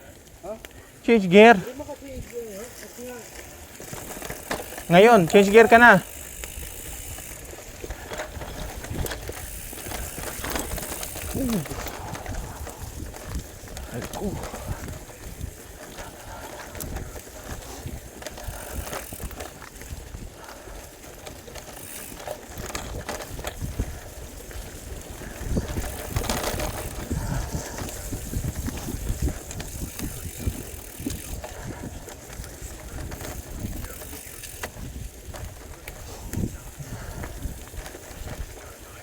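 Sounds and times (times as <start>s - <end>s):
bicycle rattling over bumps: 0.0s - 39.0s
wind buffeting microphone: 3.5s - 39.0s.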